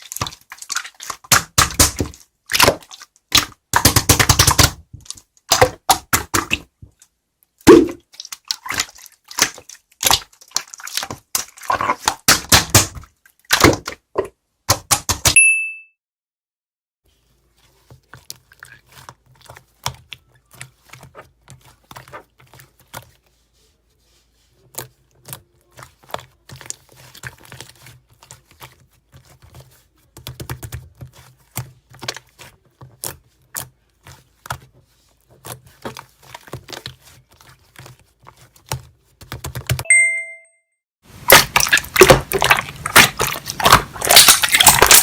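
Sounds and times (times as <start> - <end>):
slime squeezed by hand: 7.7 - 14.0, 41.2 - 45.0.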